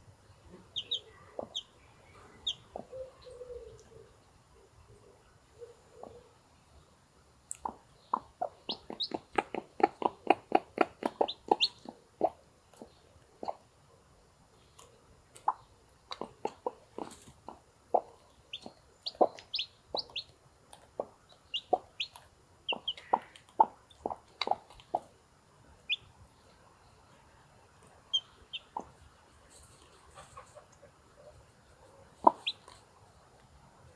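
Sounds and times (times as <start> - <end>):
chicks peeping: 0.5 - 3.9, 7.5 - 13.6, 14.7 - 25.1, 25.8 - 26.5, 28.0 - 31.4, 32.1 - 32.8
hen clucking: 0.5 - 4.1, 7.5 - 13.6, 15.4 - 25.1, 28.1 - 29.0, 29.8 - 31.4, 32.1 - 32.8.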